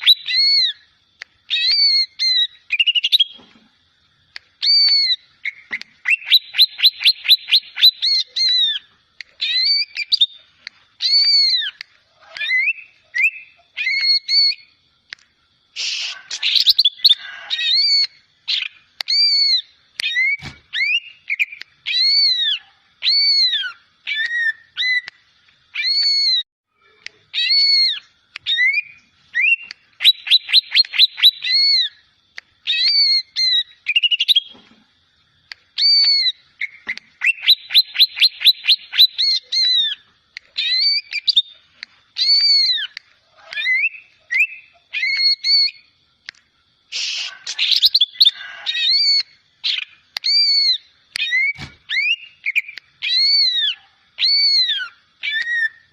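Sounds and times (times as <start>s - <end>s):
bird whistling song: 0.0s - 0.9s, 1.5s - 3.4s, 4.6s - 14.8s, 15.8s - 32.0s, 32.6s - 34.6s, 35.8s - 41.6s, 42.2s - 45.9s, 46.9s - 55.9s
bird rapid-fire trills: 0.0s - 3.4s.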